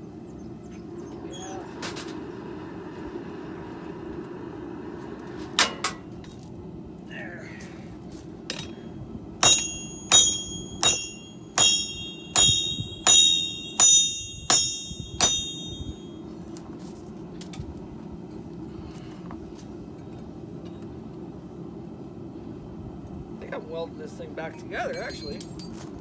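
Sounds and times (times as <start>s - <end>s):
hammer striking steel on anvil: 8.5s - 8.8s, 9.4s - 16.2s.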